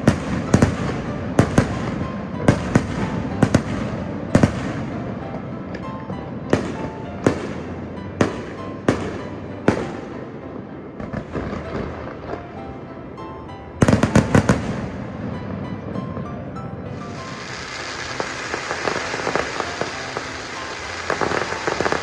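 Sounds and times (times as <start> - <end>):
steady noise: 14.0 - 22.0
fireworks shells bursting: 17.0 - 22.0.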